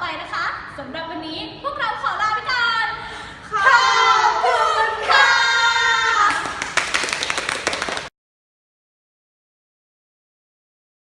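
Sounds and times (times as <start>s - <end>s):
girls calling out in unison: 3.5s - 6.5s
hand clapping: 6.2s - 8.1s.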